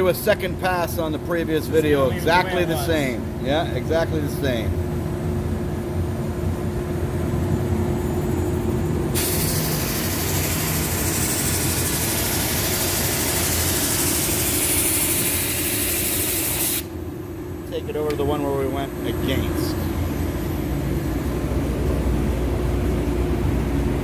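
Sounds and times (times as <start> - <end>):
brush sander humming: 9.2 - 16.9
loud even hiss: 9.2 - 16.9.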